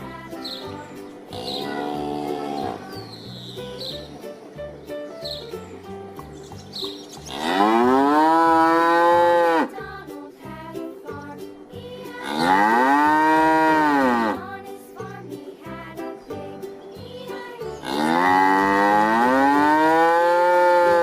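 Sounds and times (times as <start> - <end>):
light background music: 0.0 - 21.0
cow mooing: 7.3 - 9.7, 12.2 - 14.4, 17.8 - 21.0.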